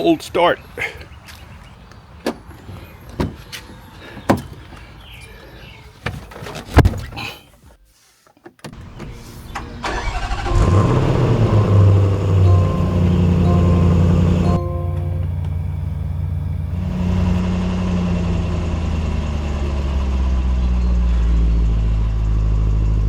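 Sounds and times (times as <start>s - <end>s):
car engine starting and idling: 8.8s - 17.4s.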